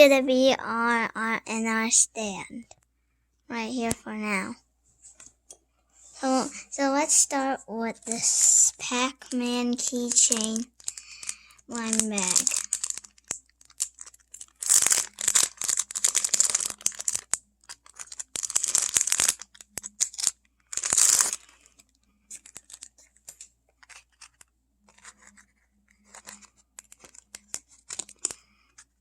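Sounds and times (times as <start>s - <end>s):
packaging crinkling: 9.2s - 29.0s
package tearing open: 9.9s - 28.9s
small clicks of packaging: 10.0s - 29.0s.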